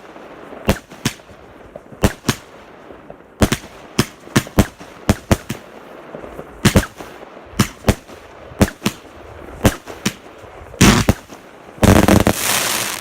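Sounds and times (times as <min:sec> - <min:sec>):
fireworks bangs: 0:03.4 - 0:13.0.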